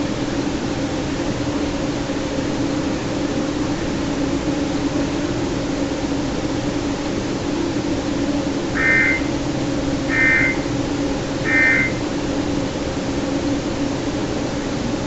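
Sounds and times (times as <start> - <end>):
receiver hum and hiss: 0.0 - 15.0
bursts of data tones: 8.8 - 9.3, 10.1 - 10.7, 11.5 - 12.0.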